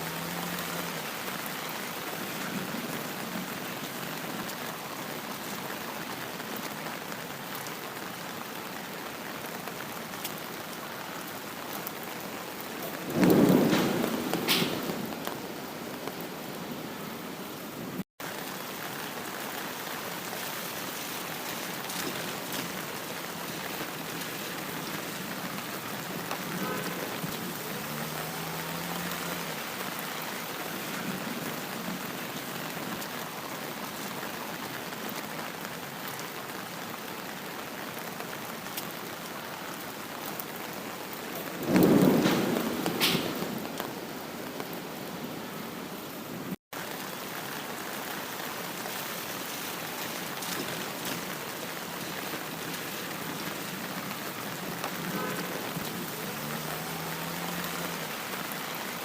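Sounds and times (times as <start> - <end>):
steady rain falling: 0.0 - 59.0
thunder rolling: 12.8 - 15.6, 41.5 - 44.2.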